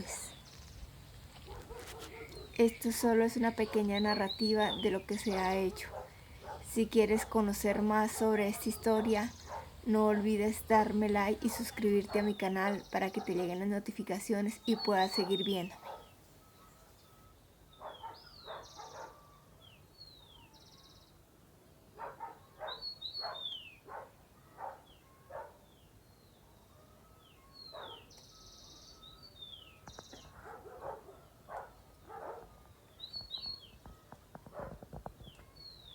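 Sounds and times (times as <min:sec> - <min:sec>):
birds whistling calls: 0:00.0 - 0:13.6, 0:14.6 - 0:21.1, 0:22.5 - 0:23.9, 0:27.2 - 0:33.9.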